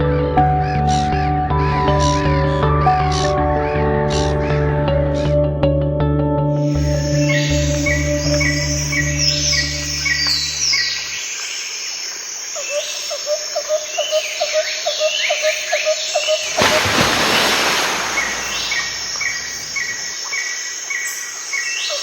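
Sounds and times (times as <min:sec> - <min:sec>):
birds chirping and calling: 0:16.1 - 0:22.0.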